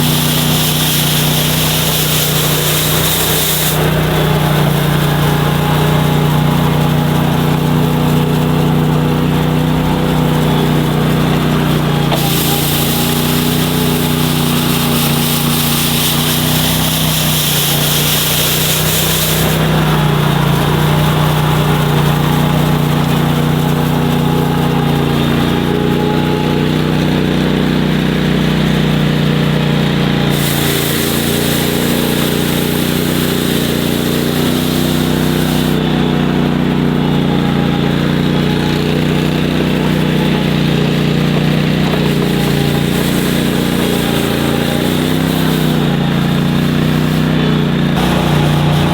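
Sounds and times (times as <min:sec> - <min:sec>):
high hiss: 0:00.0 - 0:05.6, 0:11.7 - 0:20.1, 0:30.3 - 0:35.8, 0:48.0 - 0:48.9
snow machine engine running: 0:00.0 - 0:48.9.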